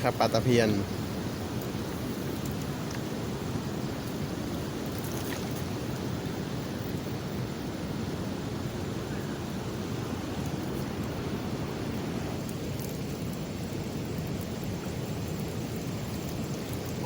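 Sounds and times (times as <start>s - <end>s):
floodwater rushing: 0.9s - 6.2s.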